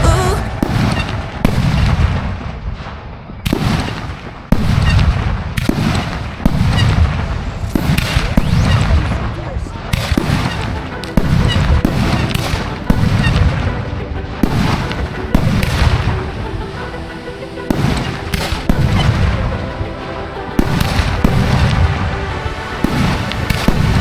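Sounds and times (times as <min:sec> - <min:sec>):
dance-pop song playing: 0:00.0 - 0:01.0
fireworks bangs: 0:00.0 - 0:24.0.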